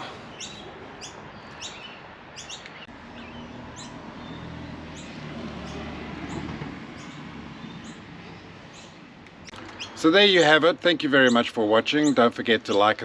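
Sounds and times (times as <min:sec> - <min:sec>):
bird chirping: 0:00.2 - 0:10.6.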